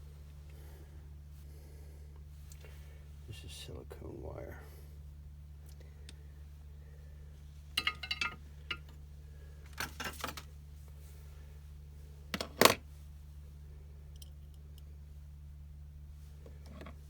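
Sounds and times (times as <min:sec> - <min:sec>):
metal tools clinking: 0:07.8 - 0:08.8.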